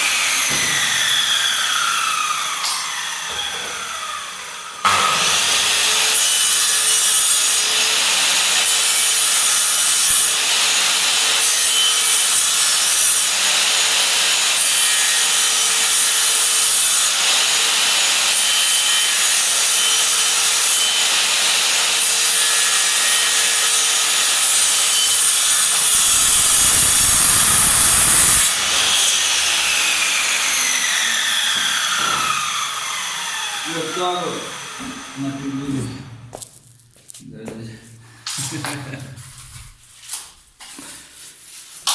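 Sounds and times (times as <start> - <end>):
miter saw cutting wood: 0.0 - 35.7
saw motor winding down: 24.7 - 35.2.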